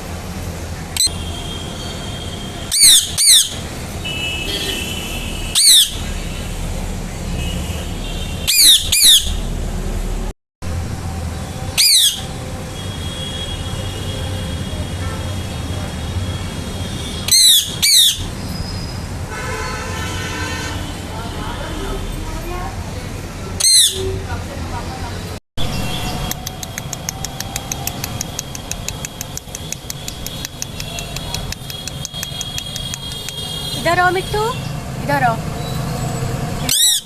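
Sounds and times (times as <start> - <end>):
parakeet screeching: 2.7 - 3.6, 5.5 - 6.1, 8.5 - 9.4, 11.8 - 12.3, 17.3 - 18.9, 23.6 - 24.2, 36.6 - 37.0.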